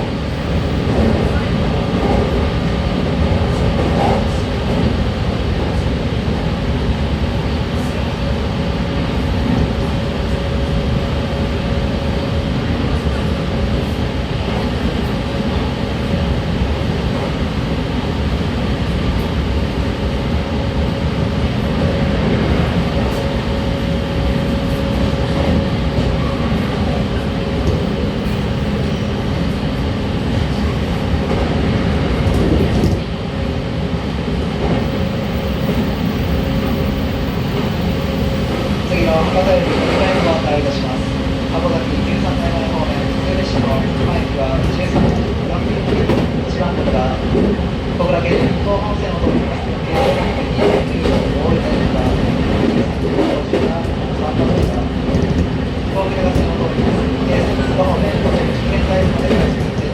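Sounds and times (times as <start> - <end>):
train wheels rumbling on track: 0.0 - 59.9.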